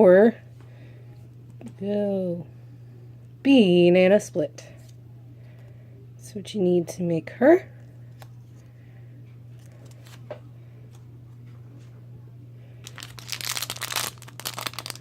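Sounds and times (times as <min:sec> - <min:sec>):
faint low hum: 0:00.0 - 0:15.0
plastic bag tearing and crinkling: 0:12.8 - 0:15.0.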